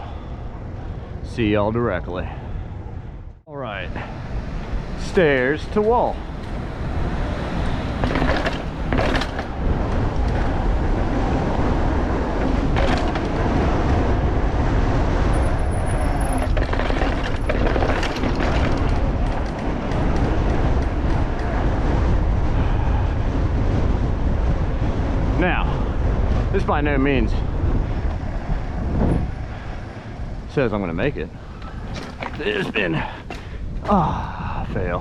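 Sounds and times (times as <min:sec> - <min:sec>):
bike tyre rumble: 0:00.0 - 0:35.0
wind rushing over microphone: 0:00.0 - 0:35.0
bike knocking over bumps: 0:06.2 - 0:11.1, 0:11.8 - 0:13.9, 0:16.0 - 0:21.8, 0:31.6 - 0:34.0.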